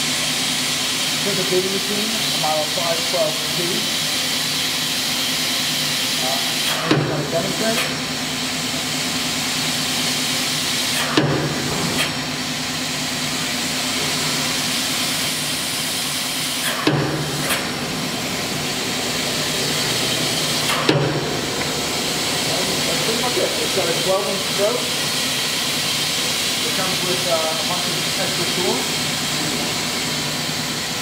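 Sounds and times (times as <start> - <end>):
machine motor humming: 2.6 - 31.0
machine clacks: 16.6 - 17.8, 20.6 - 21.8.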